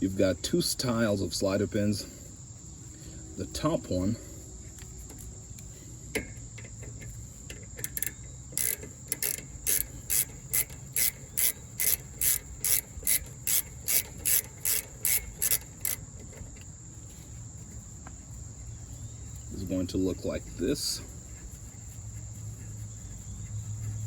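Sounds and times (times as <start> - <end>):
ratchet clicking: 6.2 - 16.6.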